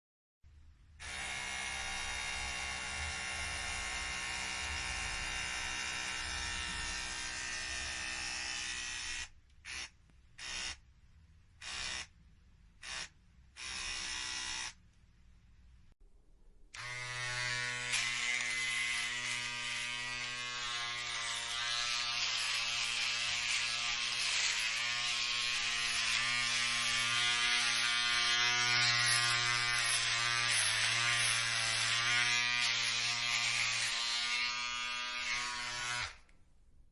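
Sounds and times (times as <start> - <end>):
electric clipper low hum: 1.0 - 10.8, 11.6 - 12.1, 12.8 - 14.8, 16.8 - 36.3
electric hair shaver buzzing: 1.0 - 10.8, 11.6 - 12.1, 12.8 - 14.8, 16.8 - 36.2.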